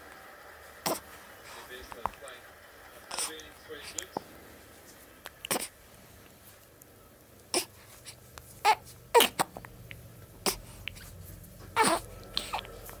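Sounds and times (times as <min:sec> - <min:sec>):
person hiccuping: 0:08.7 - 0:09.7.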